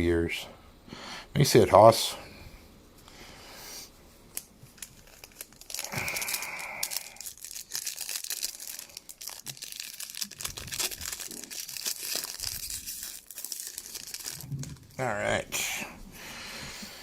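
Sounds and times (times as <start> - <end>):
packaging tearing: 4.4 - 15.0
plastic packaging crinkling: 4.4 - 15.0.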